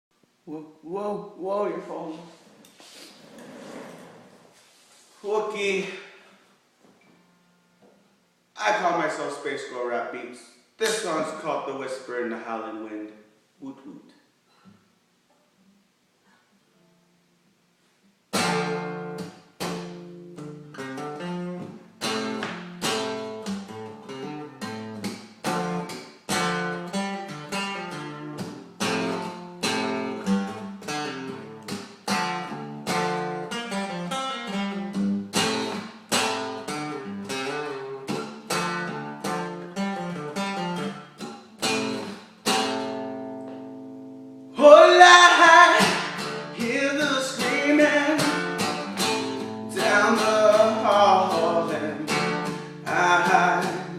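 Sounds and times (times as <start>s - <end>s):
acoustic guitar strumming: 18.3s - 53.9s
person singing: 44.6s - 48.6s, 49.7s - 53.9s.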